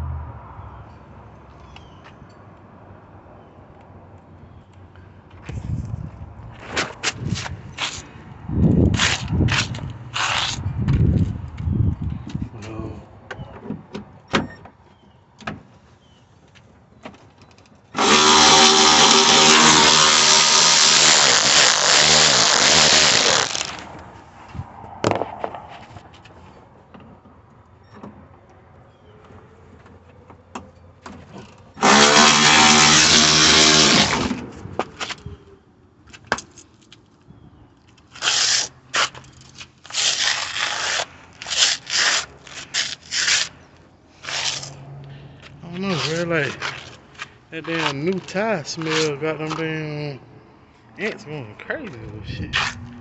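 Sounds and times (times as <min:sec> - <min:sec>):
handheld power tool motor: 0:18.0 - 0:23.8, 0:31.8 - 0:34.4.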